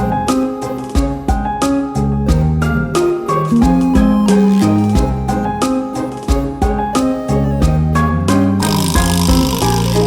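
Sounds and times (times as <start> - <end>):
upbeat instrumental music: 0.0 - 10.0.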